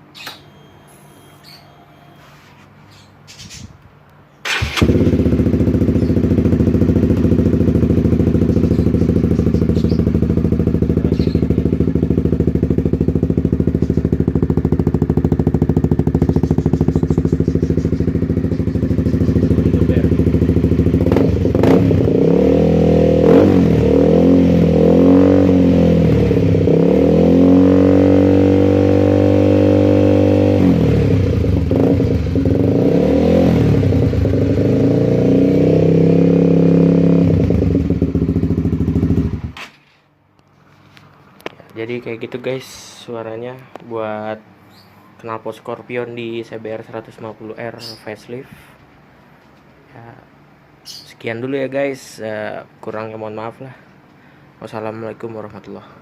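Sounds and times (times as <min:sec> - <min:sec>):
motorcycle engine idling and revving: 0:04.4 - 0:39.7.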